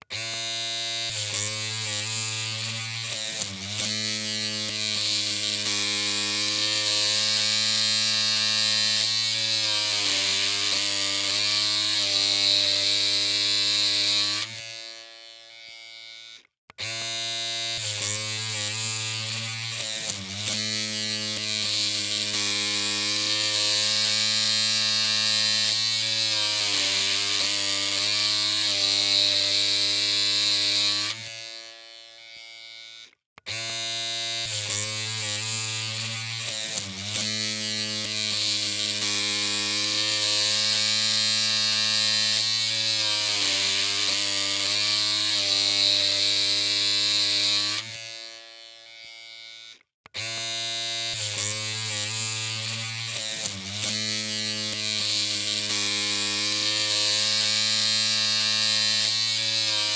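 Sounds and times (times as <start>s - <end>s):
electric hair clippers buzzing: 0.0s - 59.9s.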